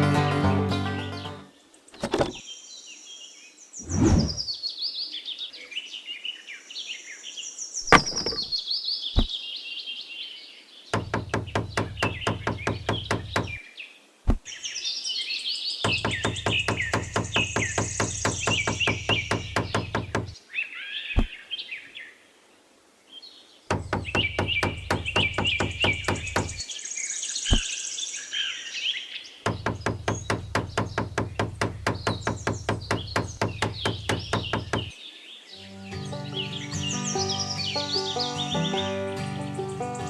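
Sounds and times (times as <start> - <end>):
birds chirping: 0.0 - 2.6, 3.7 - 4.6, 15.8 - 22.0, 23.7 - 40.0
sharp knocks: 2.0 - 2.4, 7.9 - 8.5, 11.0 - 13.6, 15.9 - 20.4, 23.7 - 26.6, 29.5 - 34.9.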